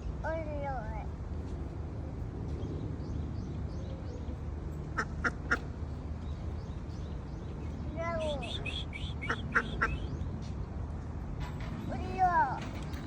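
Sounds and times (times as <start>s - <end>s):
duck quacking: 8.4s - 10.0s.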